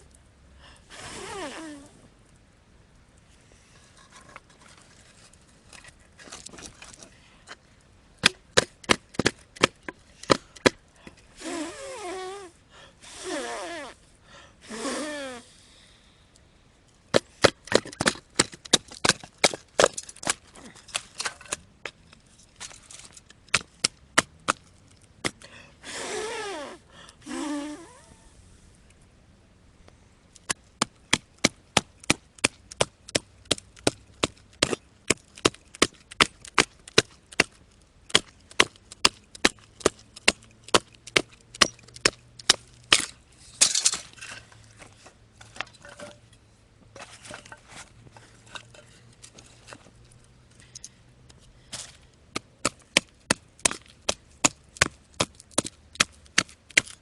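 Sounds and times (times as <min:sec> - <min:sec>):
axe chopping firewood: 0:08.2 - 0:10.8, 0:17.1 - 0:22.0, 0:23.5 - 0:25.4, 0:30.5 - 0:44.0, 0:51.7 - 0:57.0.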